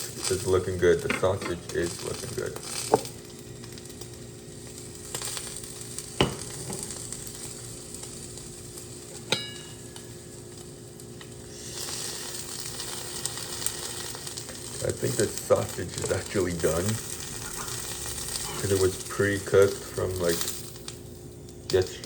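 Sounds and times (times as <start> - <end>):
food sizzling in a frying pan: 0.0 - 22.0
utensil clinking against pan: 9.3 - 9.8.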